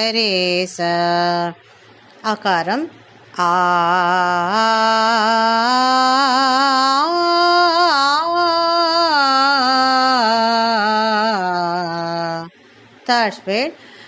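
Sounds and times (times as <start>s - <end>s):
solo voice singing: 3.4s - 12.5s.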